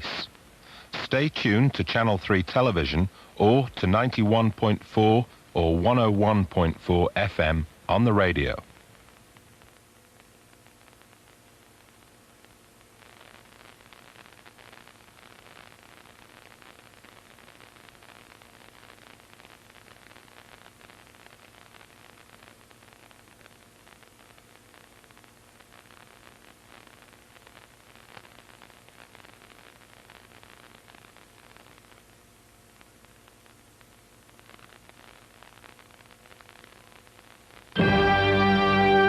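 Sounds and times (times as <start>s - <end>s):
faint low hum: 0.0s - 10.8s
static hiss: 0.0s - 39.0s.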